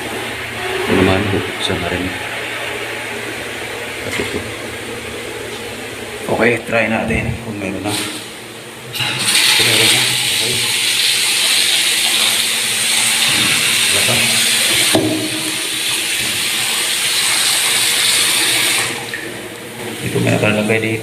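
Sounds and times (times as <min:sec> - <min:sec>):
water running from tap: 0:08.9 - 0:21.0.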